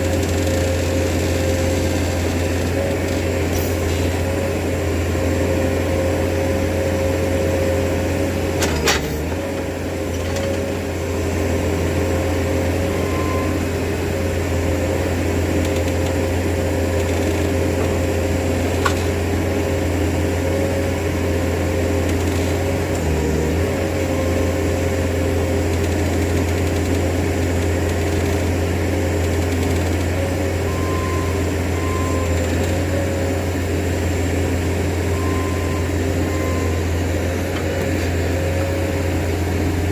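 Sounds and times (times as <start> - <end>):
sawmill engine running: 0.0 - 39.9
click: 15.6 - 16.2.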